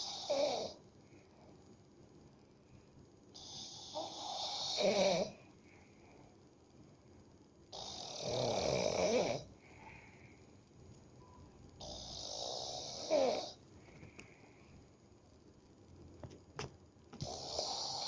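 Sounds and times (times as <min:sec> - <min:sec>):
person snoring heavily: 0:00.0 - 0:00.8, 0:03.4 - 0:05.4, 0:07.7 - 0:09.5, 0:11.8 - 0:13.6, 0:17.2 - 0:18.0
quiet breathing: 0:00.0 - 0:15.3.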